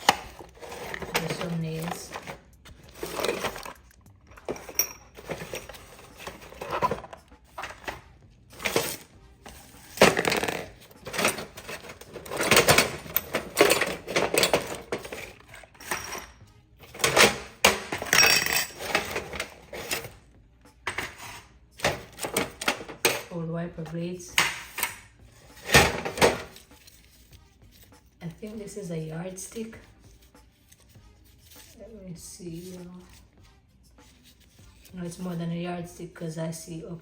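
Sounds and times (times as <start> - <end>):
metal tools clattering in toolbox: 0.0 - 20.2, 20.9 - 23.4, 24.4 - 27.0.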